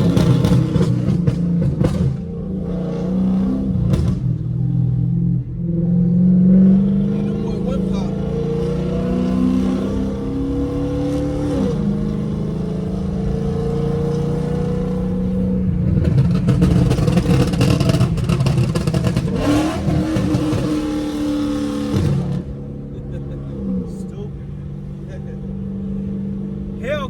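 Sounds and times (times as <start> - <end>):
exhaust crackling and popping: 0.0 - 2.5, 3.7 - 4.6, 14.0 - 23.3
car exhaust pulling: 0.0 - 27.0.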